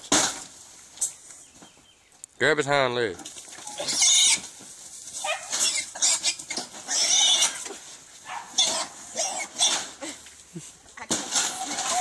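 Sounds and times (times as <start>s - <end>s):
hog squealing: 5.2s - 7.7s.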